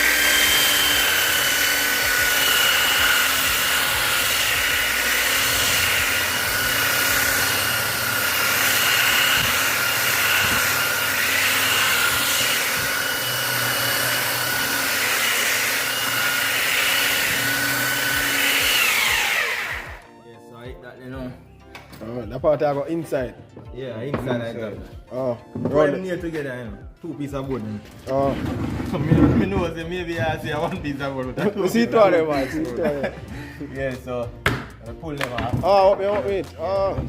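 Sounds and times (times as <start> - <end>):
electric sander whining on wood: 0.0 - 20.1.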